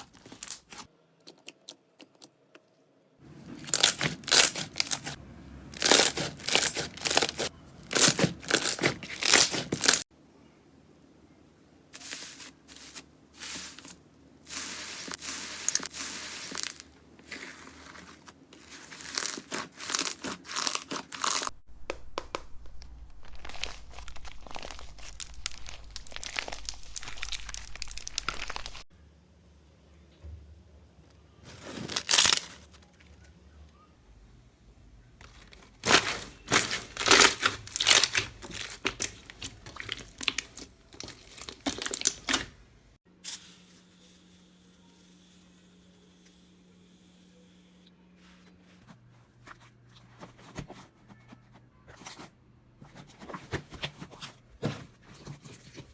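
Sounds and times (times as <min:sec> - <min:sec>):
slime crackling and popping: 0:03.6 - 0:05.2, 0:05.8 - 0:10.1, 0:14.5 - 0:16.8, 0:18.6 - 0:28.9, 0:31.7 - 0:32.6, 0:35.2 - 0:42.6.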